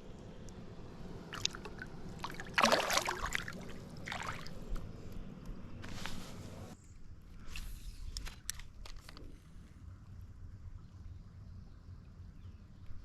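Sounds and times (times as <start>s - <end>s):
water splashing against a boat: 1.3s - 4.9s.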